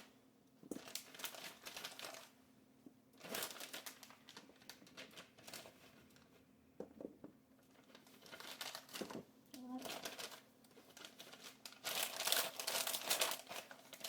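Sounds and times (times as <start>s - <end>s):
plastic bag crinkling: 0.7s - 2.4s, 3.2s - 6.4s, 7.7s - 14.0s.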